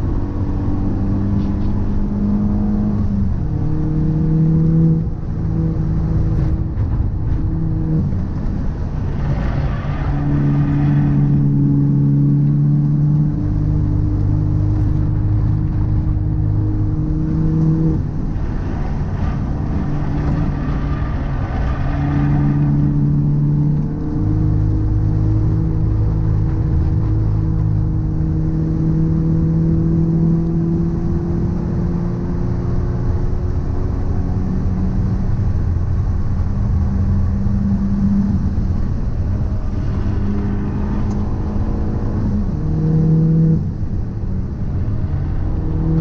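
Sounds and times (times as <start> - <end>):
car drivetrain hum: 0.0 - 46.0
rough rushing noise: 38.6 - 42.8.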